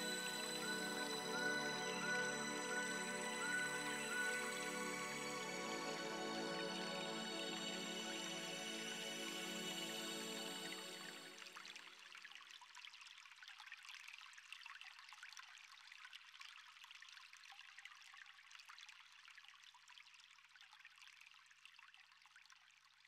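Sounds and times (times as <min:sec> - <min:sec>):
water trickling and dripping: 0:00.0 - 0:23.0.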